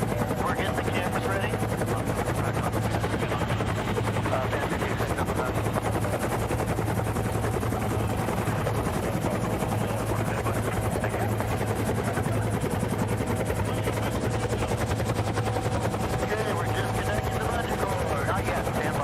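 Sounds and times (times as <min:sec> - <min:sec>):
helicopter rotor beating: 0:00.0 - 0:19.0.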